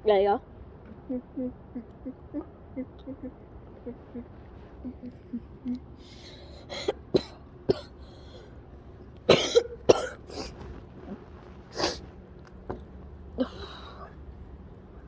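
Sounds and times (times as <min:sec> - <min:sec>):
person coughing: 0:06.7 - 0:08.0, 0:09.3 - 0:10.6.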